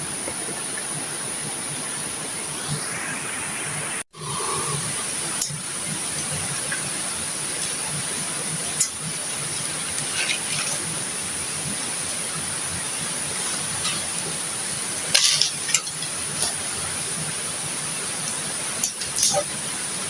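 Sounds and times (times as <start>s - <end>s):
river water flowing: 0.0s - 20.0s
light clinks and knocks: 15.0s - 16.8s.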